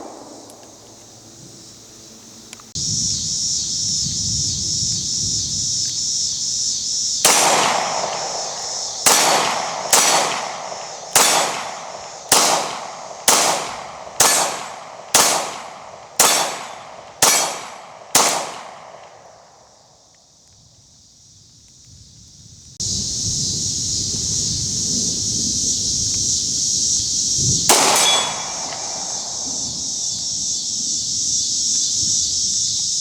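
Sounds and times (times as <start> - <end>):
pistol shots: 0.0 - 1.1, 7.2 - 19.6, 27.7 - 30.1.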